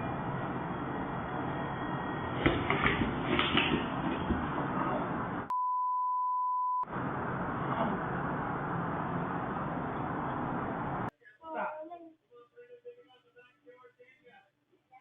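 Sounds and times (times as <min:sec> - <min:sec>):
censor bleep: 0:05.5 - 0:06.9.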